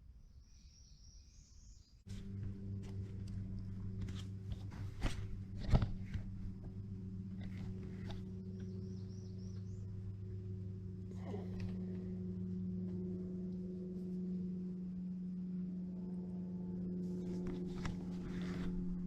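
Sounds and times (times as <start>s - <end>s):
bird chirping: 0.2s - 2.0s, 7.4s - 10.0s
distant lawnmower engine: 2.1s - 19.0s
brief rustle: 17.2s - 19.0s.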